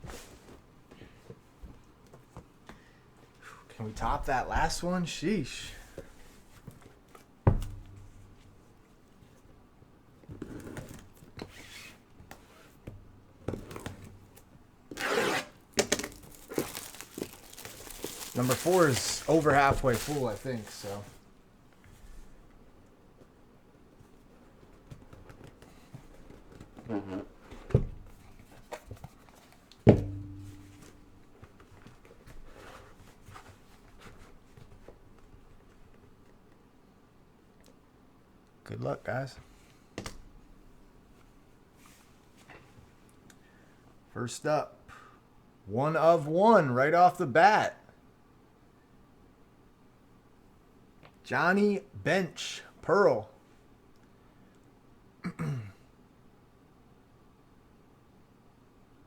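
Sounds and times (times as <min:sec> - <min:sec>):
sharp knock on box: 0:07.5 - 0:08.4, 0:29.9 - 0:31.1
packaging rustling: 0:15.5 - 0:21.2
low ring: 0:29.9 - 0:31.3.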